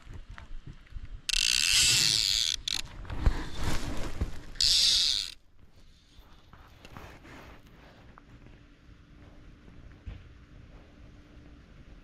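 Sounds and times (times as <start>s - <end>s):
fishing reel ratchet buzzing: 1.3s - 2.9s, 4.6s - 5.4s.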